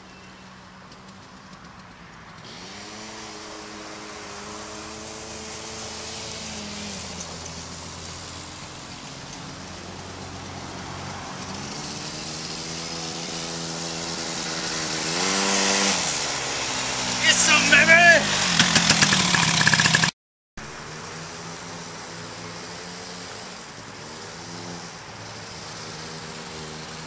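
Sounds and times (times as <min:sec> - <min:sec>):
road and wind noise: 0:00.0 - 0:27.0
vehicle engine accelerating: 0:00.8 - 0:27.0.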